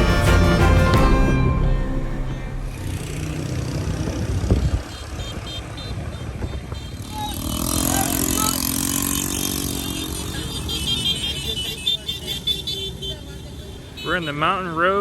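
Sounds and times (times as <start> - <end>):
motorbike engine running: 2.7 - 12.8
wind noise: 3.8 - 7.0.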